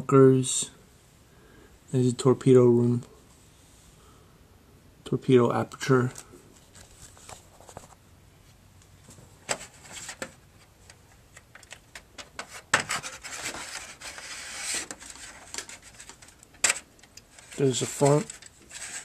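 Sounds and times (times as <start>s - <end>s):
rubbing and handling noises: 5.8s - 19.0s.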